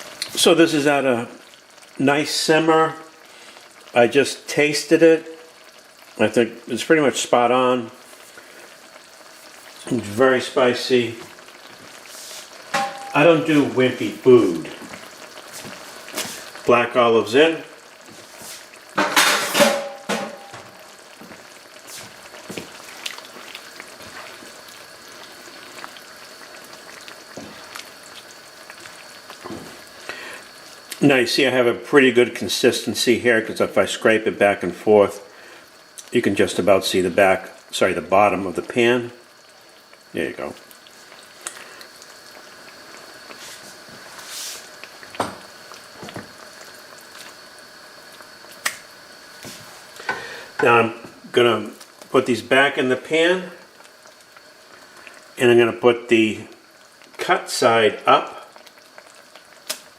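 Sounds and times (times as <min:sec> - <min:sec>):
sauce bubbling and popping: 0:00.0 - 0:31.0, 0:35.3 - 0:59.9
olives splashing into a pan: 0:11.1 - 0:13.8, 0:17.7 - 0:31.0, 0:39.6 - 0:55.4, 0:57.9 - 0:59.9.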